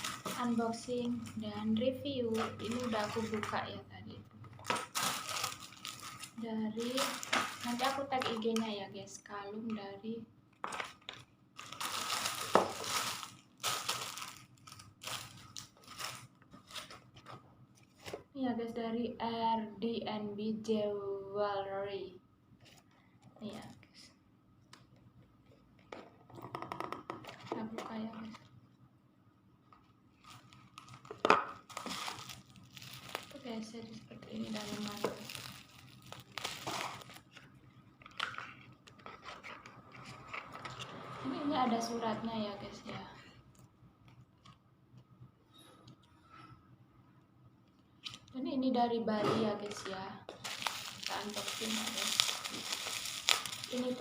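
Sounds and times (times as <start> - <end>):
packaging rustling and crinkling: 0.0 - 1.4, 2.2 - 3.7, 4.5 - 8.7, 10.6 - 18.2, 29.8 - 40.9, 50.3 - 54.0.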